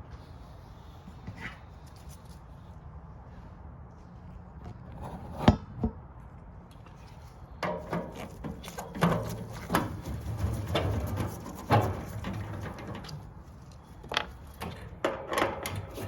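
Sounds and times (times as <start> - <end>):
tools and metal parts clattering: 7.6 - 16.0.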